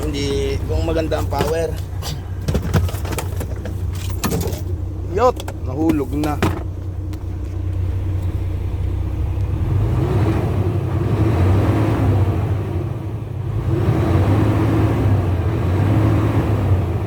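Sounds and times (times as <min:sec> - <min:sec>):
diesel truck engine revving: 0:07.8 - 0:17.0.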